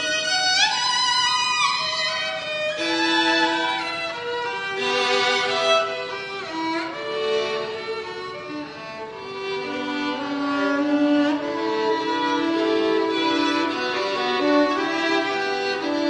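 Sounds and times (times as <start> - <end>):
slow bowed violin music: 0.0 - 16.0.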